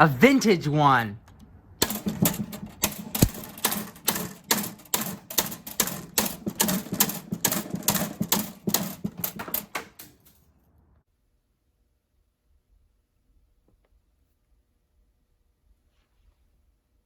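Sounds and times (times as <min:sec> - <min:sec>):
sharp clicks and taps: 0:01.2 - 0:10.3.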